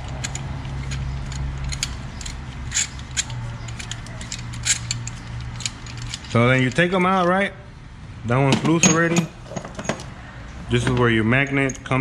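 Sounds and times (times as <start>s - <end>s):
socket ratchet clicking: 0.0s - 6.4s.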